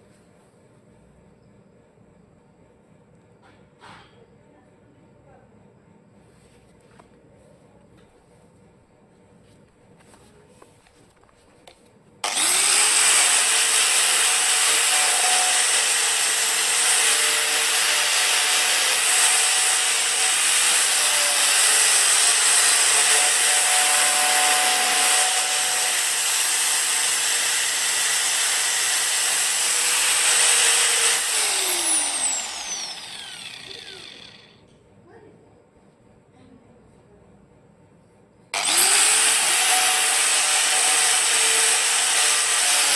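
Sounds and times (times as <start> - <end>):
angle grinder whining: 12.2 - 34.5, 38.6 - 42.9.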